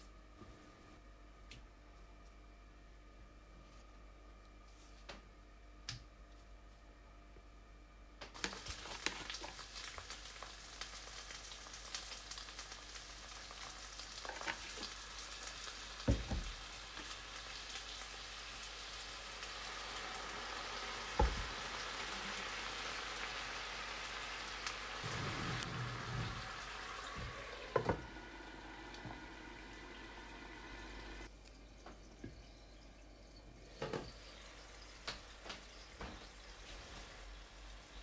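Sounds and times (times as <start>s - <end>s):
food sizzling in a pan: 8.4s - 31.3s, 34.2s - 38.0s.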